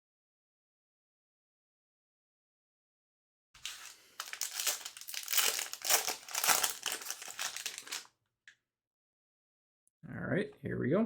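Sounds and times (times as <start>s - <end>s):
foil wrapper crinkling: 3.6s - 8.1s.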